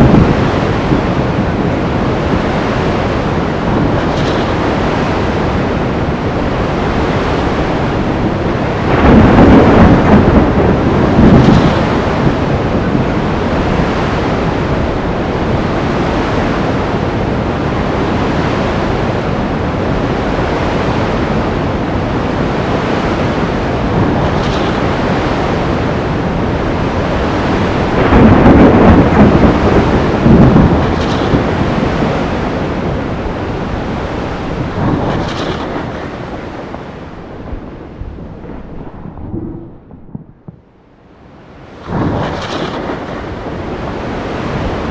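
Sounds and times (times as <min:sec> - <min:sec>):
surf: 0:00.0 - 0:39.9, 0:41.2 - 0:44.9
rain: 0:00.0 - 0:44.9
rolling thunder: 0:00.0 - 0:44.9.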